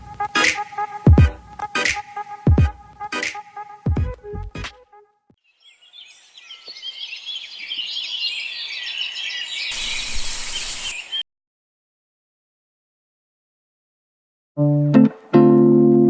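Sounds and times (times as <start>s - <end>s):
birds chirping and singing: 5.5s - 11.2s.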